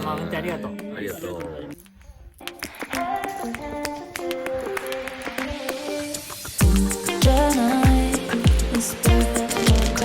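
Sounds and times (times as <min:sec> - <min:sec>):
background music with light beat: 0:02.4 - 0:10.0.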